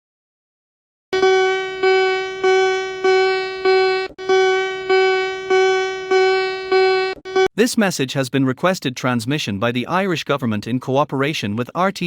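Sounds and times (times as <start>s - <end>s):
repeated electronic note: 1.2s - 7.5s.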